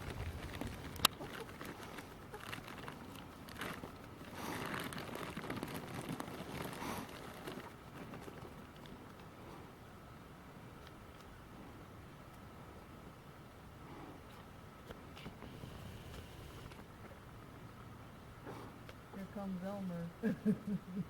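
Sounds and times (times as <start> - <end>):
bag rustling and crinkling: 0.0 - 9.0.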